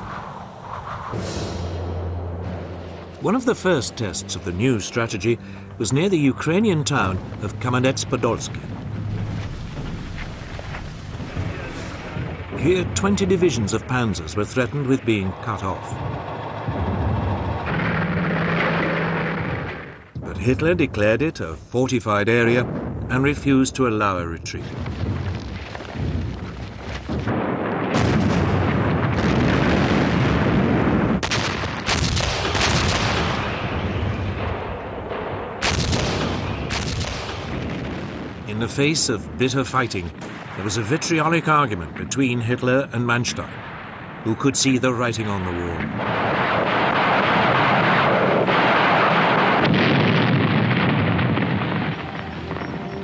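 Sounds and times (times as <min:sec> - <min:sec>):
heavy explosions: 0:00.0 - 0:53.0
gunfire: 0:15.9 - 0:20.0, 0:24.8 - 0:38.3, 0:45.8 - 0:53.0.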